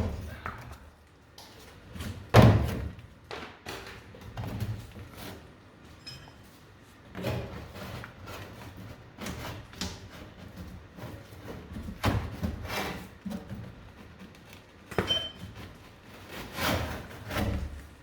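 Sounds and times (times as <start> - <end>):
knocks and scrapes on metal: 14.9 - 18.0.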